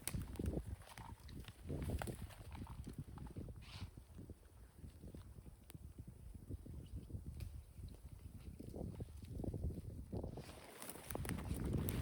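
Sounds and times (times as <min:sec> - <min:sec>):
tent rustle: 0:10.3 - 0:12.0.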